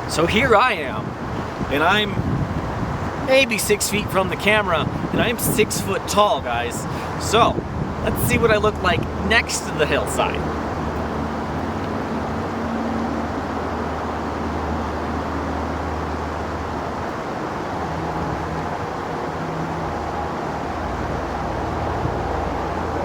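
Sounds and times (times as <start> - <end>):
highway traffic rumble: 0.0 - 23.0
low engine hum: 0.0 - 23.0.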